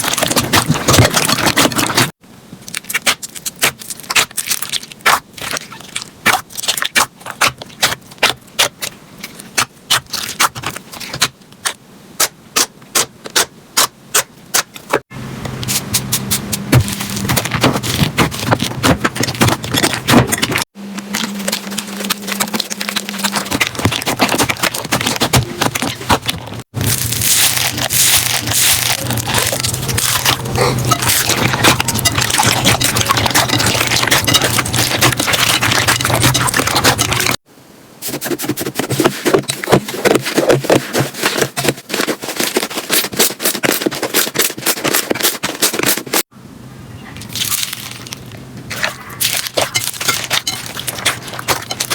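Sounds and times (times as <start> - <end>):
slime crackling and popping: 0.0 - 11.8, 16.8 - 37.4.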